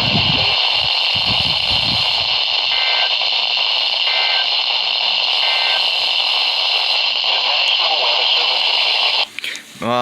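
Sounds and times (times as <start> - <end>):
buzzy data bursts: 0.0 - 9.3
radio static hiss: 0.0 - 10.0
broadcast voice: 6.6 - 9.2.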